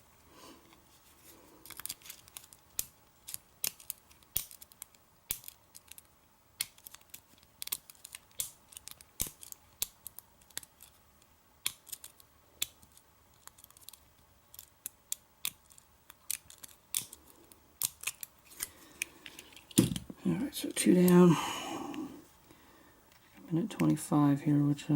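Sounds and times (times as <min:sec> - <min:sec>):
lock picks clicking and scraping: 0:01.6 - 0:11.0, 0:11.6 - 0:20.1.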